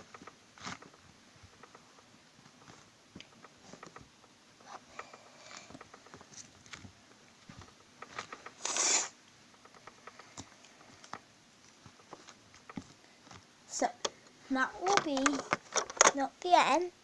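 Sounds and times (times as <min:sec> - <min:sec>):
hissing burst: 0:08.6 - 0:09.2.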